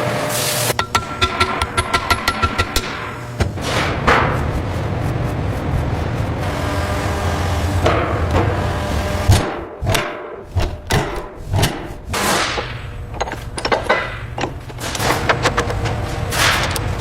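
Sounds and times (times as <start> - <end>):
sharp clicks and knocks: 0.7 - 4.5, 9.3 - 17.0
low steady rumble: 0.8 - 16.4.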